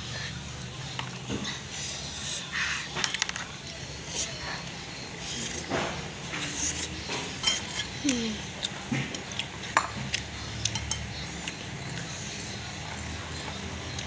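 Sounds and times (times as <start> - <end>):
cutlery clinking against bowl: 5.4 - 8.0, 8.6 - 12.1.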